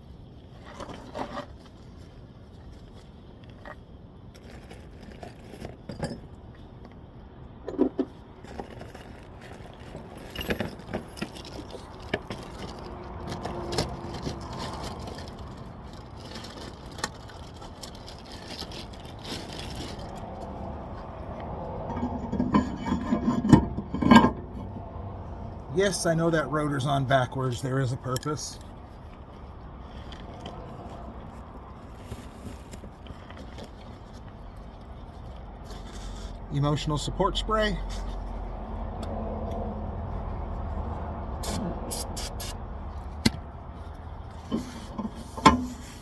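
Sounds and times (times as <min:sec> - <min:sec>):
metal tools clinking and scraping: 0:08.7 - 0:15.2, 0:21.8 - 0:24.8, 0:26.8 - 0:28.7.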